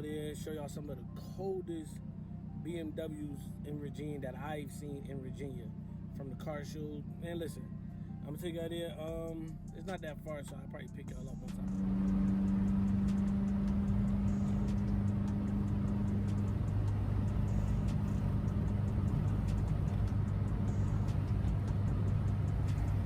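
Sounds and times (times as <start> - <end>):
car engine and exhaust droning: 0.0 - 23.0
light regular ticking: 9.1 - 23.0.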